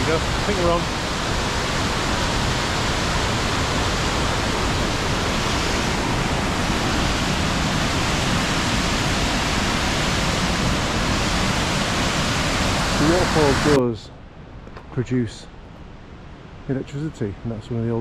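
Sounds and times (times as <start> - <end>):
waterfall rushing: 0.0 - 13.9.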